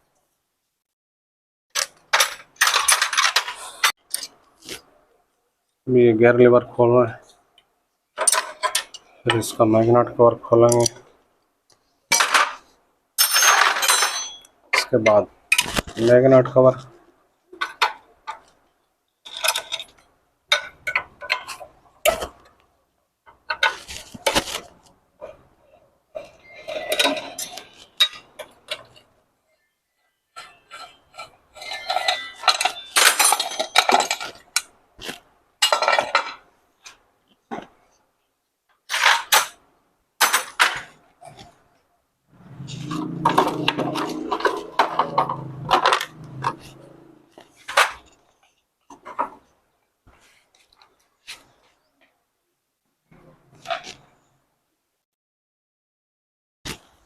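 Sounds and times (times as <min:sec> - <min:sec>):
metal tools clinking and clanking: 0:01.8 - 0:04.4, 0:08.2 - 0:09.5, 0:13.2 - 0:14.9, 0:19.3 - 0:21.6, 0:26.2 - 0:29.0, 0:30.3 - 0:34.7, 0:35.6 - 0:36.4, 0:42.8 - 0:48.3.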